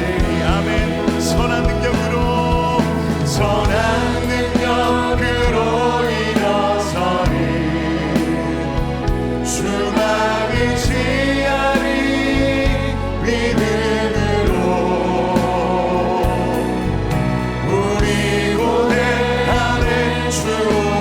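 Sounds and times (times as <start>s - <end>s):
band playing worship song: 0.0s - 21.0s
people singing: 0.0s - 21.0s.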